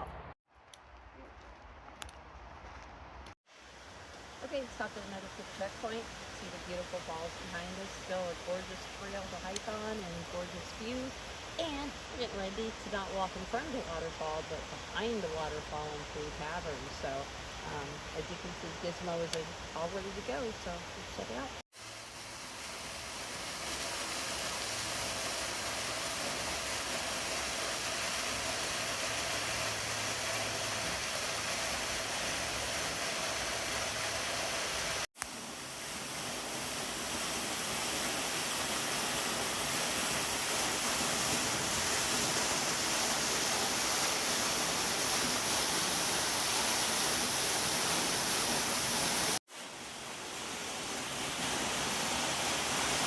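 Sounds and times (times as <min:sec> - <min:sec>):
waterfall rushing: 0:21.2 - 0:53.0.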